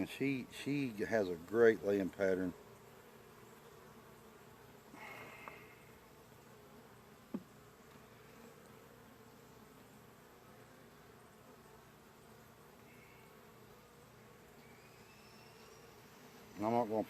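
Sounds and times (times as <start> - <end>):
bees buzzing: 0.0 - 17.0
brief thump: 7.3 - 7.5.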